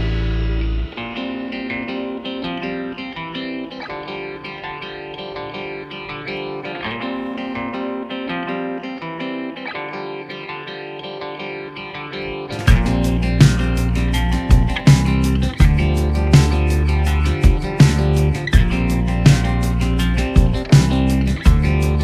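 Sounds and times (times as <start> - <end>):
loud heavy sound: 0.0 - 1.1
guitar background music: 0.0 - 22.0.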